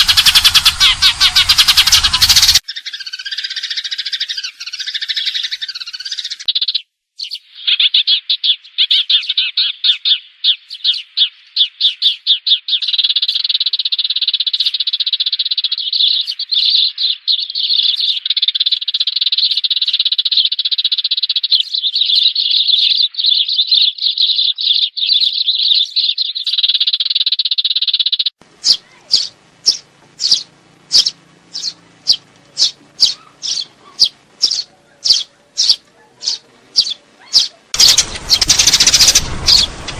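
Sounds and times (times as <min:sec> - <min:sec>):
sparrows chirping: 0:00.0 - 0:39.9.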